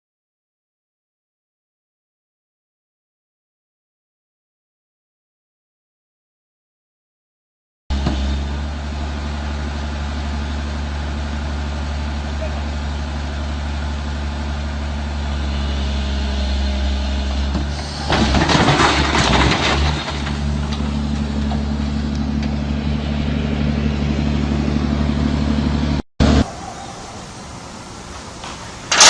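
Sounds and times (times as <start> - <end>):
engine running: 7.9 - 29.0
loud noisy burst: 17.7 - 20.4, 26.2 - 29.0.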